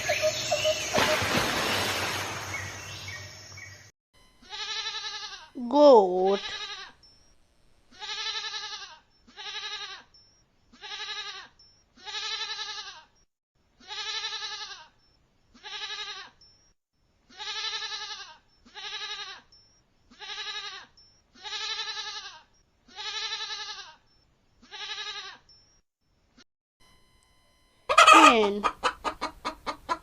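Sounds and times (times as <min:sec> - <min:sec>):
goat bleating: 0:04.4 - 0:05.5, 0:06.2 - 0:06.9, 0:07.9 - 0:10.1, 0:10.8 - 0:13.1, 0:13.8 - 0:14.9, 0:15.6 - 0:16.4, 0:17.3 - 0:19.5, 0:20.1 - 0:24.0, 0:24.6 - 0:25.4, 0:27.9 - 0:28.7.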